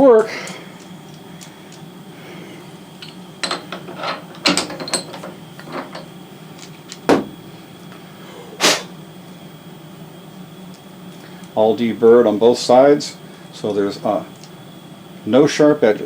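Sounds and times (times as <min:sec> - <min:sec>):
steady shop hum: 0:00.0 - 0:16.0
metal part clicking and knocking: 0:03.0 - 0:06.1.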